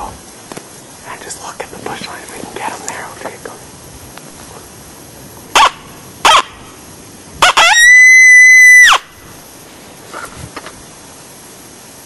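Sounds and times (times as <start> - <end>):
coyote howler call: 5.6 - 6.6, 7.4 - 9.1.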